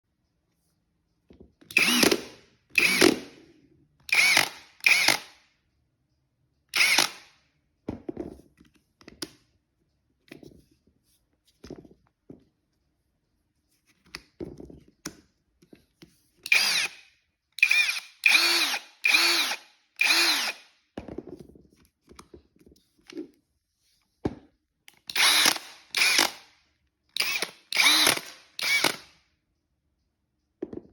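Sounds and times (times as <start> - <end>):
drill motor whining: 1.7 - 3.2, 4.1 - 5.2, 6.8 - 7.2, 16.5 - 17.0, 17.6 - 20.6, 25.1 - 26.4, 27.2 - 29.0
drill rattling: 1.7 - 3.3, 4.1 - 5.3, 6.8 - 7.2, 16.5 - 17.0, 17.6 - 20.7, 25.1 - 26.4, 27.2 - 29.1.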